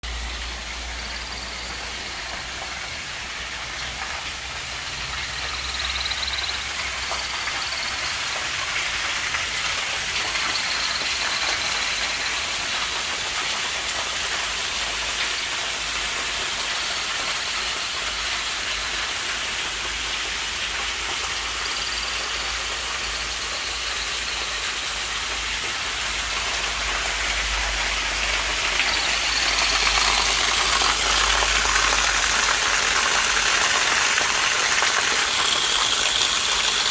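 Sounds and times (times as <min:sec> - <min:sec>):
waterfall rushing: 0:14.9 - 0:36.9.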